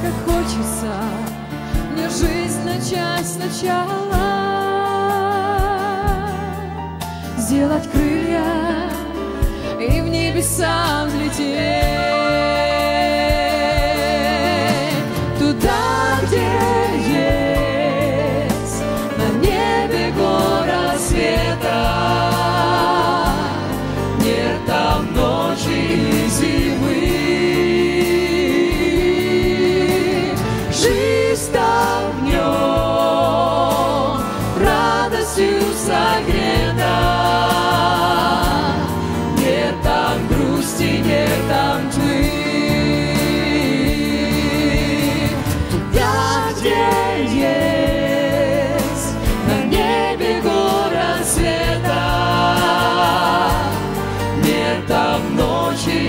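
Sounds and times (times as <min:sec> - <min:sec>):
backing track with steady bass: 0:00.0 - 0:56.0.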